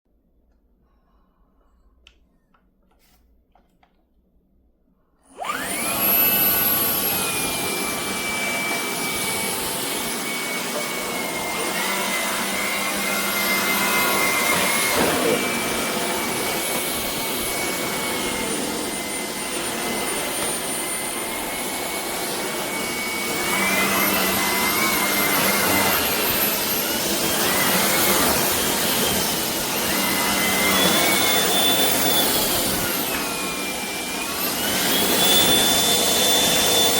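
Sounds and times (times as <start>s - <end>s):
cordless vacuum whine: 5.2s - 36.9s.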